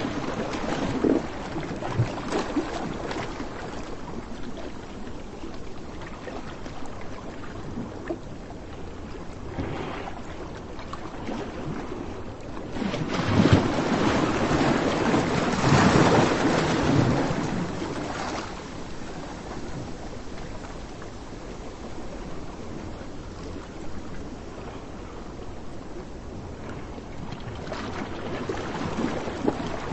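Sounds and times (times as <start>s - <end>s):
surf: 0.0s - 29.9s
wind: 0.0s - 29.9s
wave breaking: 9.4s - 25.2s.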